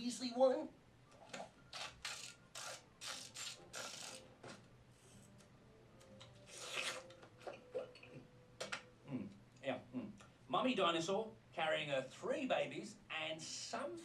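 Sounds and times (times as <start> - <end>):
scratchy rasps: 1.7 - 4.3.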